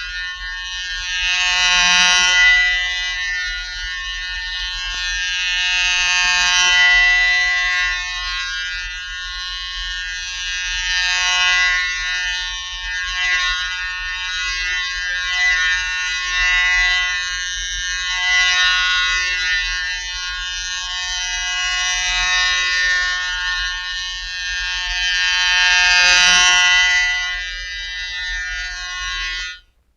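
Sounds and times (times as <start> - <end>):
droning buzz tone: 0.0 - 29.9.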